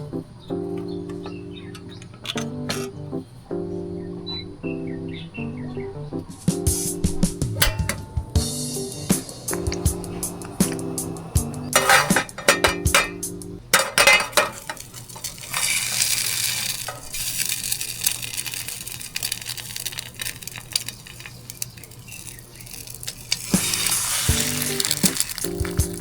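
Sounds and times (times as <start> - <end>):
background music: 0.0 - 14.4, 23.6 - 26.0
utensil clinking against pan: 0.8 - 3.0, 7.4 - 26.0
batter sizzling in a pan: 6.8 - 26.0.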